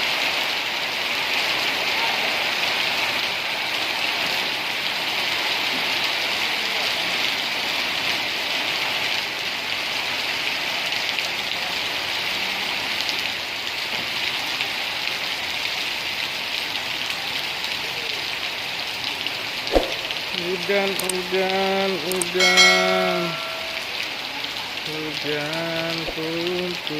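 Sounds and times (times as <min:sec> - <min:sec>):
steady rain hiss: 0:00.0 - 0:26.9
sharp knock: 0:19.7 - 0:20.3.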